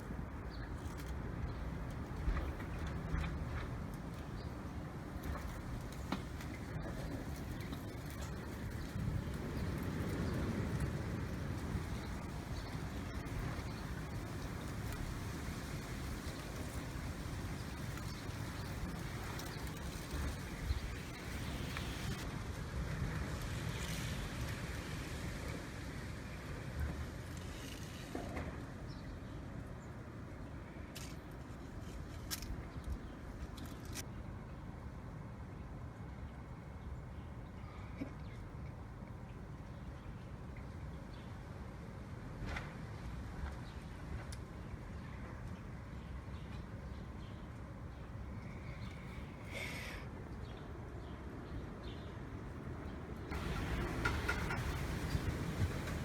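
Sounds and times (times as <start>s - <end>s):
strong wind buffeting microphone: 1.3s - 22.3s, 52.6s - 56.0s.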